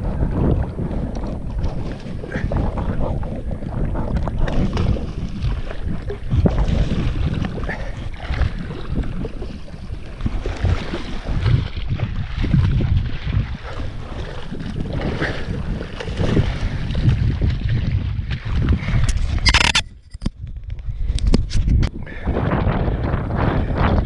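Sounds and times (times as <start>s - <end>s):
gusty wind buffeting microphone: 0.0s - 24.0s.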